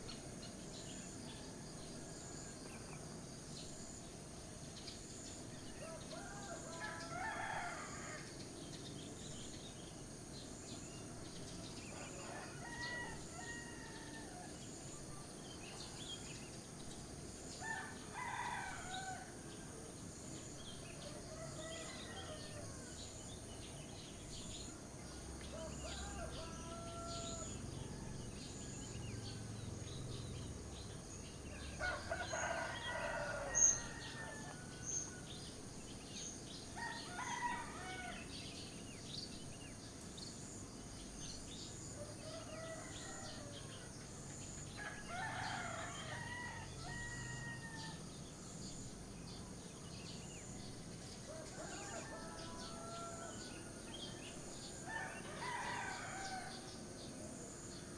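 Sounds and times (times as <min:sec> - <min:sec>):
roosters crowing: 0:12.1 - 0:14.5, 0:25.5 - 0:29.6, 0:31.8 - 0:35.3, 0:36.8 - 0:38.4, 0:42.0 - 0:43.9, 0:44.8 - 0:48.1, 0:51.3 - 0:53.9, 0:54.7 - 0:56.7.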